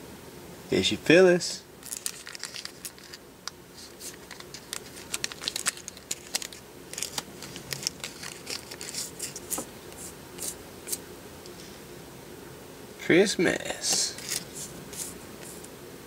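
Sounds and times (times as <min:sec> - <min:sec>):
trading cards flipped by hand: 0:01.8 - 0:11.0, 0:13.9 - 0:15.7.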